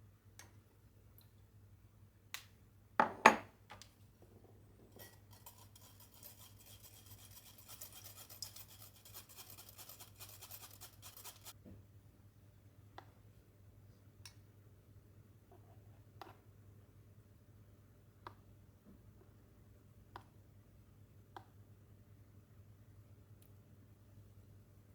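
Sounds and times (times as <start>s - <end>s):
rapid scratching: 5.3s - 11.5s.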